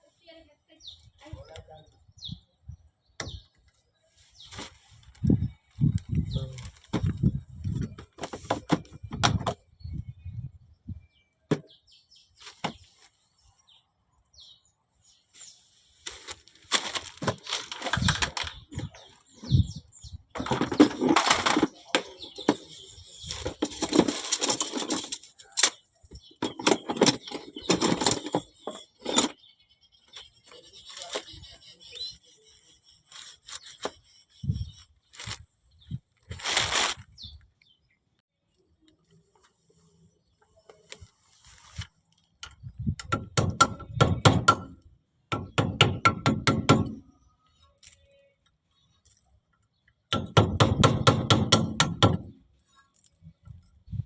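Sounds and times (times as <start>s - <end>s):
metal tools clinking and rattling: 17.0s - 18.8s, 20.4s - 25.8s, 26.4s - 29.4s.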